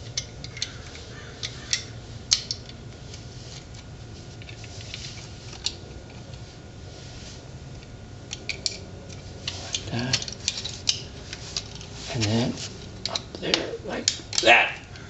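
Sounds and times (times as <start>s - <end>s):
metallic clicks of brake parts: 0.0s - 2.8s, 7.8s - 11.9s.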